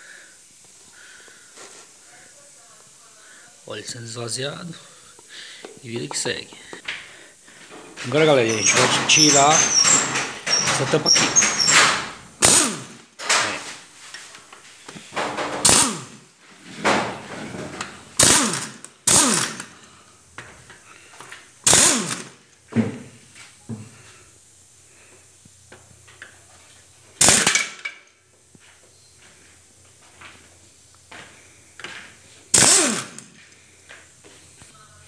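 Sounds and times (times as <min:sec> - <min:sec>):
power tool unscrewing bolts: 0:07.7 - 0:13.8, 0:15.0 - 0:16.1, 0:16.8 - 0:19.7, 0:21.2 - 0:22.4, 0:32.5 - 0:33.3.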